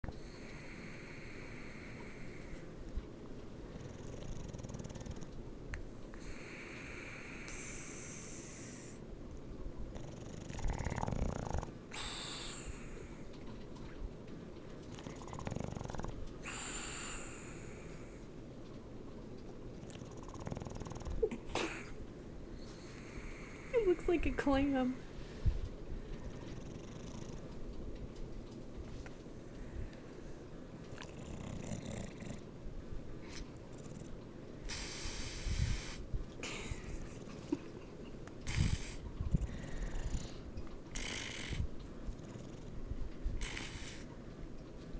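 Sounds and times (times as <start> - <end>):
wheezing breaths: 0.1 - 2.9, 6.1 - 9.0, 11.9 - 13.4, 16.4 - 18.3, 38.4 - 41.7
dog snoring: 3.6 - 9.0, 9.9 - 13.3, 14.9 - 18.3, 19.8 - 21.9, 26.2 - 27.6, 30.9 - 32.5, 33.2 - 36.0, 38.5 - 42.8, 43.4 - 44.1.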